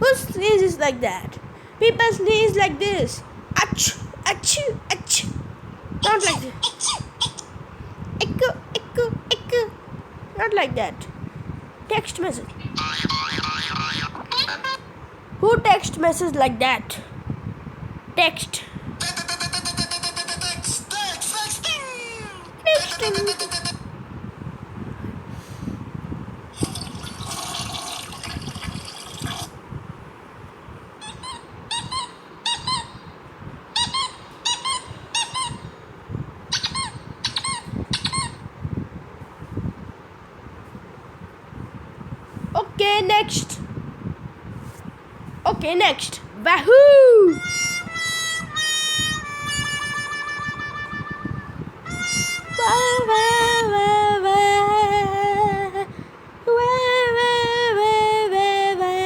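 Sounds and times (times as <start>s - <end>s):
ringtone with high sung voice: 47.3s - 55.0s.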